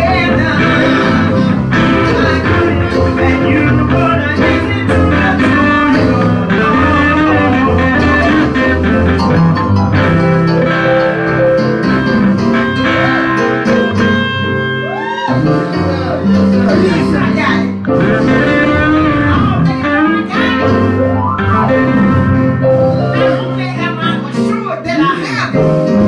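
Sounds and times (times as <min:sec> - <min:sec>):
blues guitar: 0:00.0 - 0:26.0
low bass notes: 0:00.0 - 0:26.0
drum strokes: 0:17.9 - 0:23.2.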